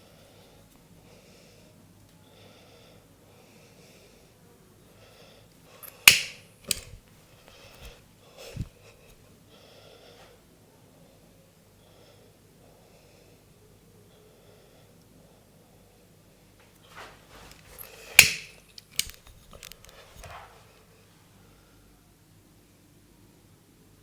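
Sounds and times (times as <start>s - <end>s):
neck cracking: 5.8s - 7.0s, 17.5s - 20.4s.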